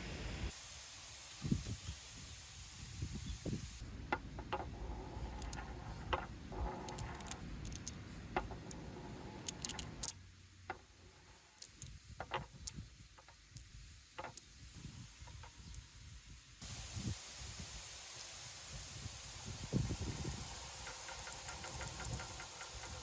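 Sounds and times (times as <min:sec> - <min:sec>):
balls clicking and knocking: 0:04.0 - 0:15.9, 0:20.2 - 0:23.0
balls rolling on marble run: 0:04.1 - 0:13.4, 0:20.3 - 0:23.0.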